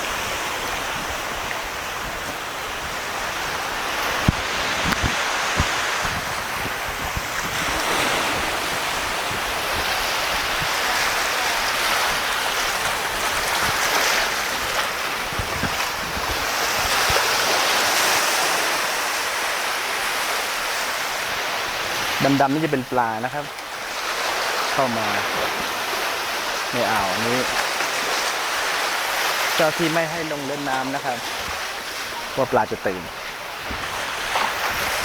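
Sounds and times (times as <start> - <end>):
wind buffeting microphone: 0.0 - 18.8, 33.0 - 35.0
sea waves washing: 0.0 - 35.0.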